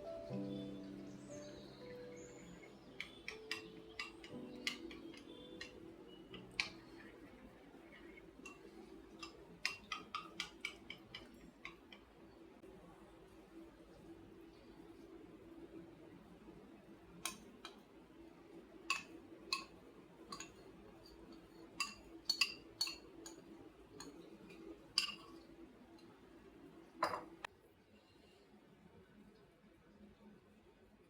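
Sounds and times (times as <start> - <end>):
faint low hum: 0.0 - 31.0
kitchenware clinking: 2.2 - 12.2, 18.9 - 25.5, 27.0 - 27.5.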